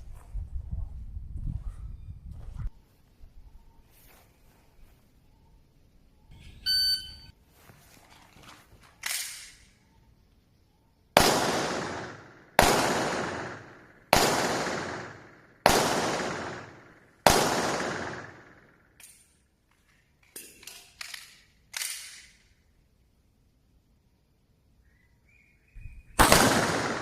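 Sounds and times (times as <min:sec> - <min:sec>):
electronic shot-timer beep: 0:06.3 - 0:07.3
handgun shots echoing: 0:11.2 - 0:19.3, 0:26.2 - 0:27.0
sharp crack: 0:26.2 - 0:27.0.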